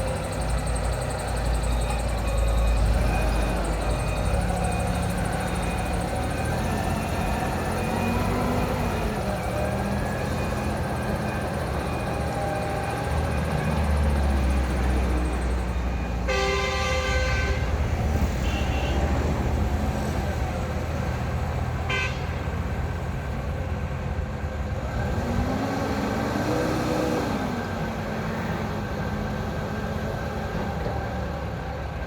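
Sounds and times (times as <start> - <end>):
forklift engine running: 0.0 - 32.0
horn honk: 16.3 - 19.3, 21.8 - 22.5.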